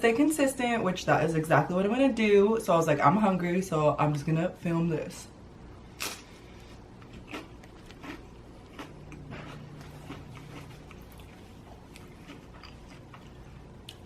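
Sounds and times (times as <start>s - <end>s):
chewing crispy pizza: 6.0s - 14.0s.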